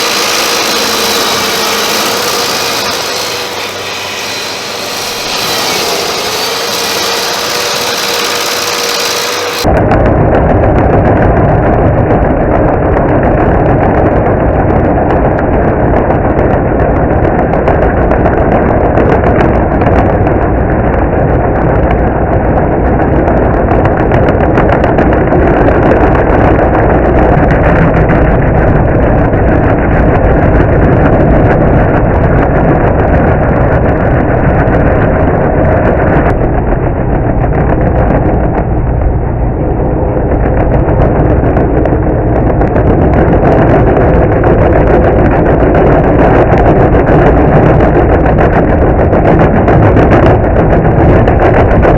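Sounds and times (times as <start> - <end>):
stump grinder engine running: 0.0 - 9.7.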